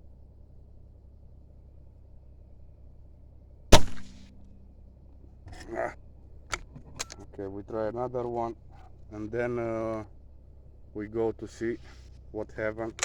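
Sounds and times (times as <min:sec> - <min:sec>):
air rifle shot: 0:03.8 - 0:04.3.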